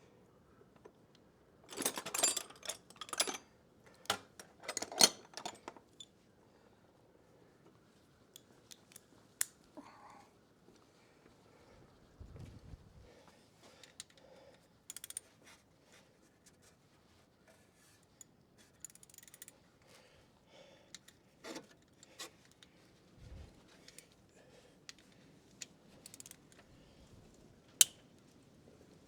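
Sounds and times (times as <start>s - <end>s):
tools clinking on metal: 1.7s - 3.4s
hand ratchet clicking: 14.9s - 15.3s, 18.8s - 19.5s, 26.0s - 26.4s.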